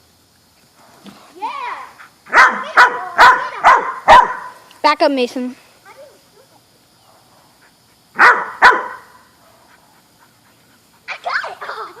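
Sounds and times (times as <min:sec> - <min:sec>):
dog barking: 0:02.3 - 0:04.6, 0:08.2 - 0:09.7.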